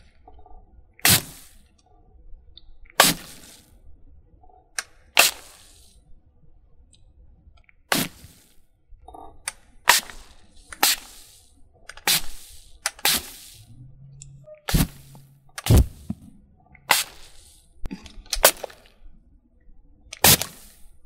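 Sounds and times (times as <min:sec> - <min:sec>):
sharp water and ice strokes: 0:03.0 - 0:03.7, 0:07.9 - 0:08.6, 0:09.9 - 0:13.7, 0:16.8 - 0:17.6.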